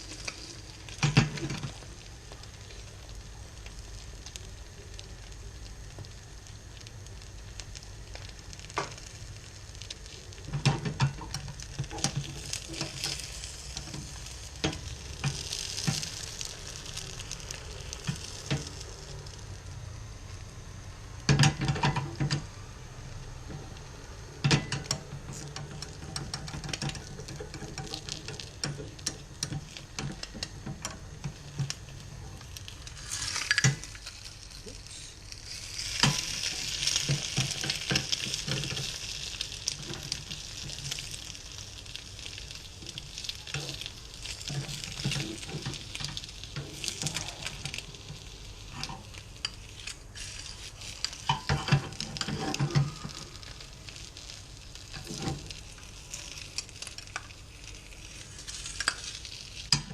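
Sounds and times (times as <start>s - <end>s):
eggs sizzling in a pan: 0.0s - 59.9s
spatula scraping a pan: 43.2s - 55.6s.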